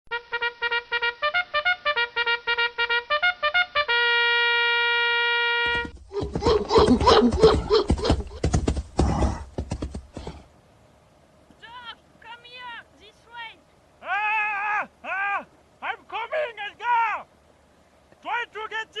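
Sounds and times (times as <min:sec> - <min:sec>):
trumpet fanfare: 0:00.1 - 0:05.9
jumble of thumps: 0:05.7 - 0:10.5
cries: 0:06.1 - 0:09.4, 0:14.0 - 0:15.5.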